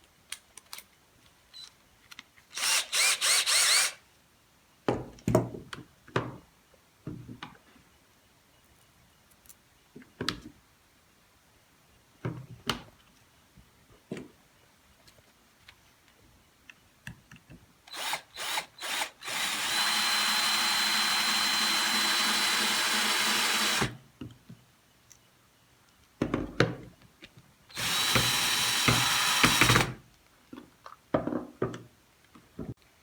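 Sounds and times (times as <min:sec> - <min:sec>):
drill trigger blips: 0:02.6 - 0:04.0, 0:17.9 - 0:23.9, 0:27.8 - 0:29.9
power drill whining: 0:02.6 - 0:04.0, 0:17.9 - 0:23.9, 0:27.7 - 0:30.0.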